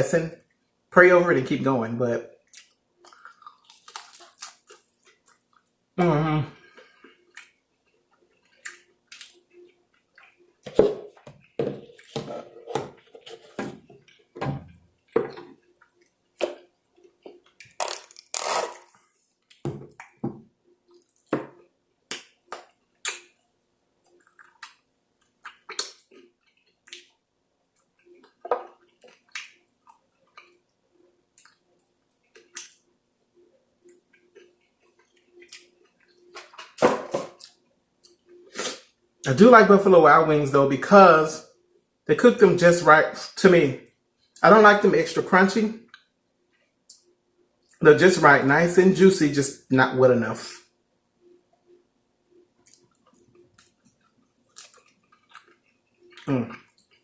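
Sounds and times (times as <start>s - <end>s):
wet chewing and lip smacks: 2.4s - 5.8s, 7.2s - 10.5s, 20.8s - 23.4s, 24.0s - 30.7s, 31.4s - 32.8s, 52.6s - 57.0s
short low vocal sound: 6.0s - 6.6s.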